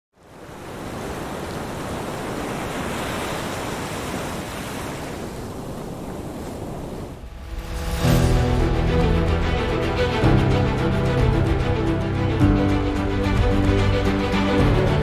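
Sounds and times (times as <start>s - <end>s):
ocean waves breaking on beach: 0.1s - 15.0s.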